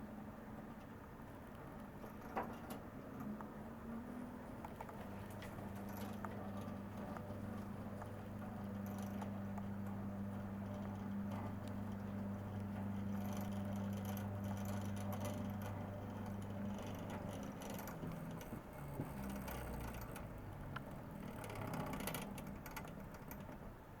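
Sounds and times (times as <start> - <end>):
electric motor and gears running: 5.0 - 23.5.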